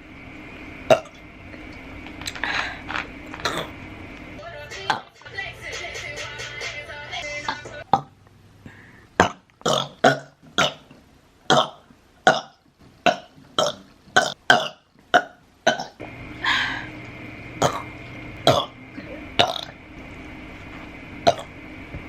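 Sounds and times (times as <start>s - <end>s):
woman burping: 18.5s - 19.7s.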